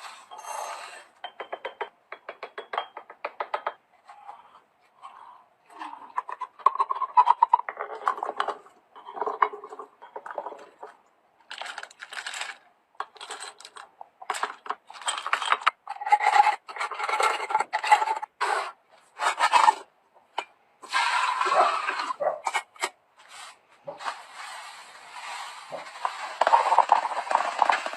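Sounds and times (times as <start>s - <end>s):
containers clattering: 5.8s - 18.2s, 25.1s - 27.9s
packages rustling: 11.5s - 12.6s.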